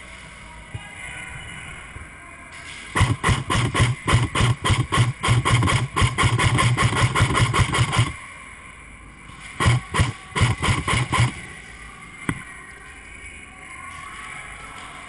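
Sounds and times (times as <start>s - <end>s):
airsoft rifle automatic bursts: 3.0s - 8.2s, 9.6s - 11.4s.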